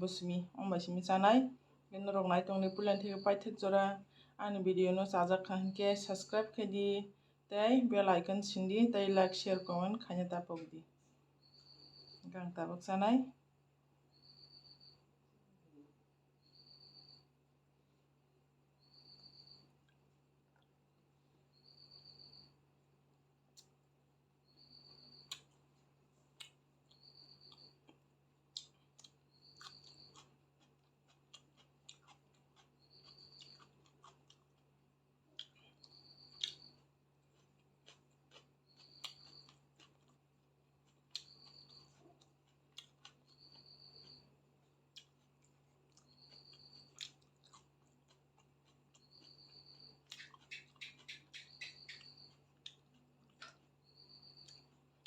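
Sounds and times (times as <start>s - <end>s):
person chewing food: 19.4s - 20.8s, 24.5s - 55.0s
mouth clicks and smacks: 50.1s - 53.6s.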